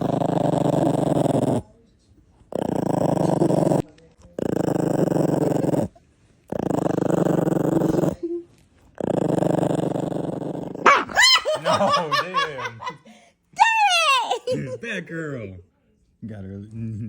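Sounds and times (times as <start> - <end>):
puppy growling: 0.0 - 1.7, 2.4 - 13.0
puppy wavering higher sounds: 10.9 - 12.0.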